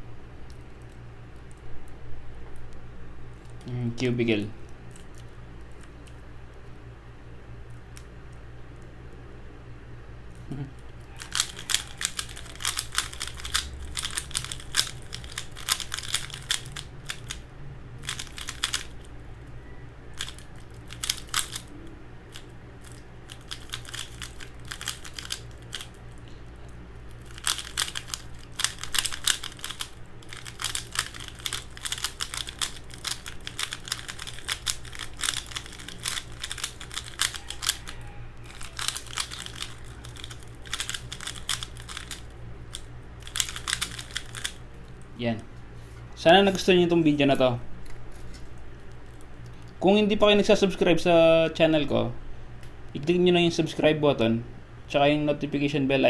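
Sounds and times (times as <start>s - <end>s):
puzzle cube plastic clicking: 11.2s - 17.4s, 18.0s - 19.1s, 20.2s - 21.7s, 22.3s - 26.0s, 27.1s - 37.8s, 38.5s - 44.6s.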